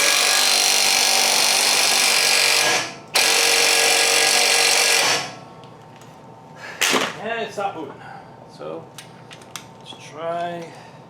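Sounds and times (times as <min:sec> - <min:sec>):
impact wrench bursts: 0:00.0 - 0:05.4.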